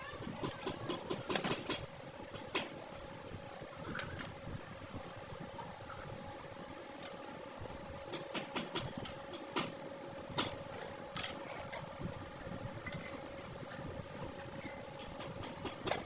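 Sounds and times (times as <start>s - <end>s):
steady machine hum: 0.0s - 16.0s
sharp clicks and knocks: 8.1s - 9.8s, 14.6s - 16.0s.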